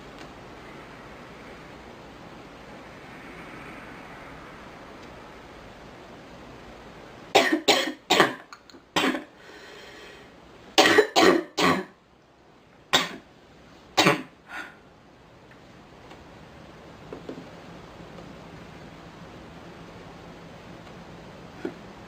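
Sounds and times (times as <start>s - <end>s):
girl coughing: 7.4s - 8.4s, 9.0s - 9.3s, 10.8s - 12.0s.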